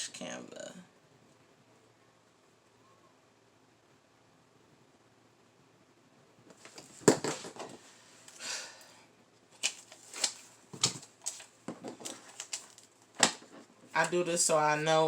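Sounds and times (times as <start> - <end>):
paper rustling: 9.5 - 14.2.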